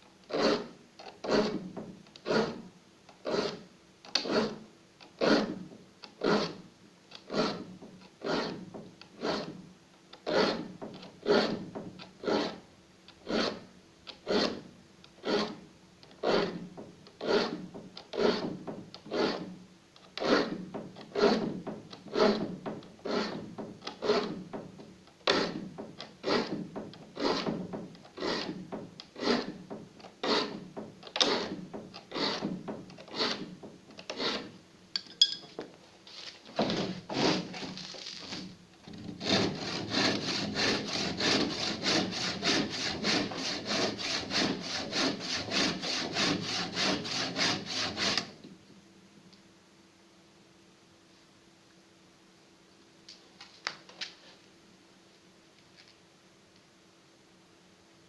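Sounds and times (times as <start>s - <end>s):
file rasping on saw teeth: 0.3s - 1.6s, 2.2s - 2.6s, 3.2s - 3.6s, 4.2s - 4.6s, 5.2s - 5.6s, 6.2s - 6.6s, 7.2s - 8.6s, 9.2s - 9.6s, 10.2s - 11.6s, 12.2s - 12.6s, 13.2s - 13.6s, 14.2s - 14.6s, 15.2s - 15.6s, 16.2s - 16.6s, 17.2s - 18.5s, 19.1s - 19.5s, 20.2s - 21.5s, 22.1s - 24.4s, 25.3s - 25.6s, 26.2s - 26.6s, 27.2s - 27.6s, 28.2s - 28.6s, 29.2s - 29.6s, 30.2s - 30.6s, 31.2s - 33.5s, 34.1s - 34.6s, 36.8s - 37.7s, 39.0s - 48.3s.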